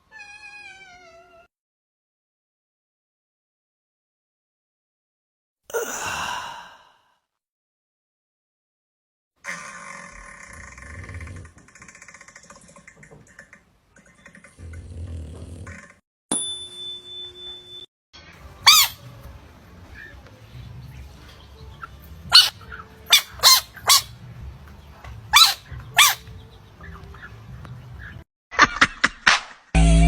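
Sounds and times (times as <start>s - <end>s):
squeaky animal calls: 18.6s - 19.1s, 22.2s - 24.2s, 25.3s - 26.3s.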